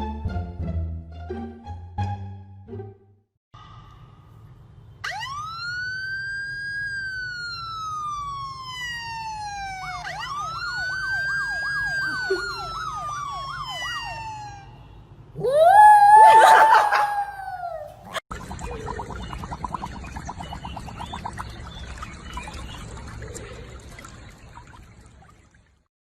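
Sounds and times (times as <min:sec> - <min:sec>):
siren wailing: 0:05.0 - 0:18.2
rough wavering howl: 0:15.4 - 0:18.2.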